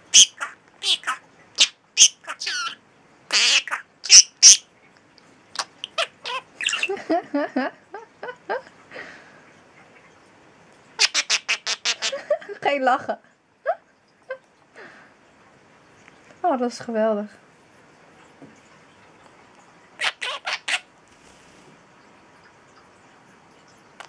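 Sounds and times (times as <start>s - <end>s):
budgerigar shrieking: 0.1s - 4.6s, 20.0s - 20.8s
budgerigar warbling chatter: 0.1s - 4.6s, 5.6s - 6.9s, 20.0s - 20.8s.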